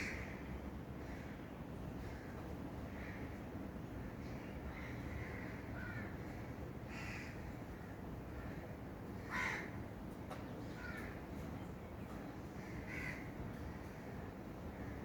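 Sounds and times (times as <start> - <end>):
low background noise: 0.0 - 15.0
crow cawing: 4.7 - 8.6, 9.2 - 9.8, 10.8 - 11.2, 12.6 - 14.2.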